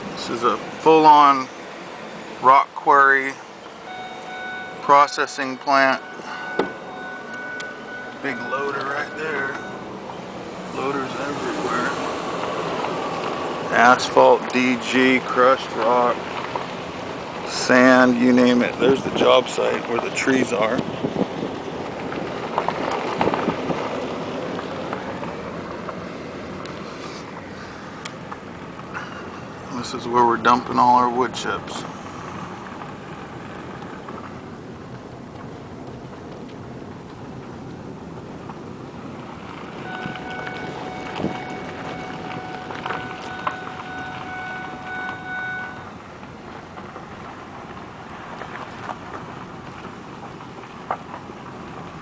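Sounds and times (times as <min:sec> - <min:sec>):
moving vehicle noise: 0:00.0 - 0:52.0
high-pitched whine: 0:03.9 - 0:09.9
wind noise: 0:16.2 - 0:27.5, 0:32.3 - 0:52.0
wind on microphone: 0:20.8 - 0:24.2, 0:39.9 - 0:43.2.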